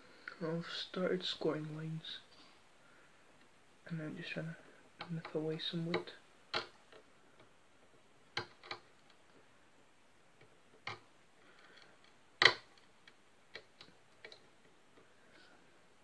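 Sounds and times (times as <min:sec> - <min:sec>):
wood chisel clicking and snapping: 0:05.0 - 0:07.5, 0:08.3 - 0:09.2, 0:10.4 - 0:14.4.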